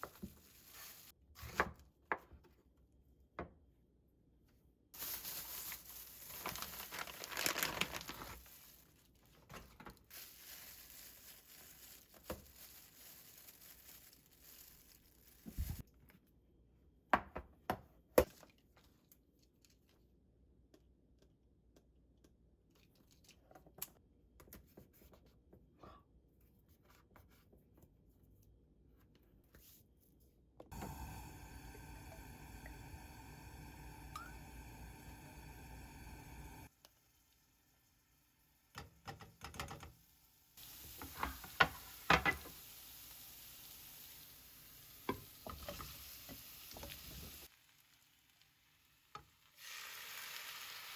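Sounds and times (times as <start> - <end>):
wrapping paper tearing and crinkling: 5.0 - 9.3, 10.0 - 15.8.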